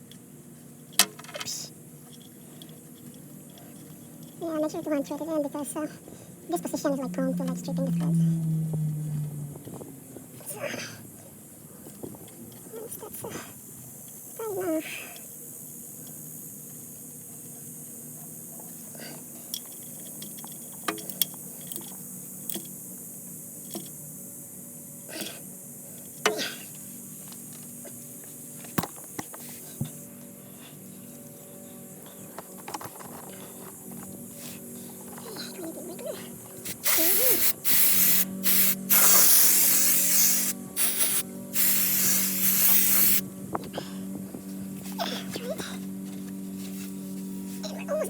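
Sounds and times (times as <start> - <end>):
steady low hum: 0.0 - 48.0
aerosol spray can hissing: 36.6 - 43.2.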